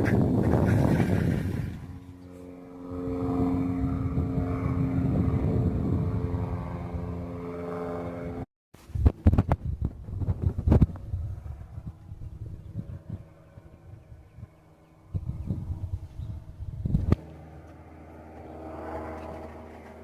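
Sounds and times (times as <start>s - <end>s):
wind buffeting microphone: 0.0s - 7.4s, 8.8s - 17.3s
propeller airplane droning overhead: 0.0s - 20.0s.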